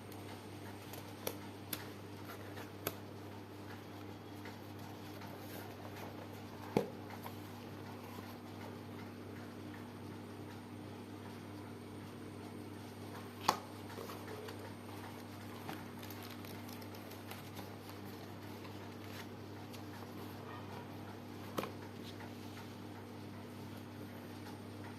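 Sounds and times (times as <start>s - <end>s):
low electrical hum: 0.0s - 24.9s.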